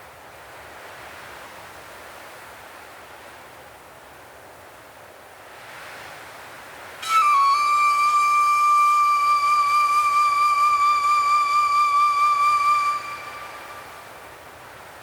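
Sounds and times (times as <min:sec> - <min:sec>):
soft wind-like hiss: 0:00.0 - 0:15.0
flute holding a long note: 0:07.0 - 0:14.5.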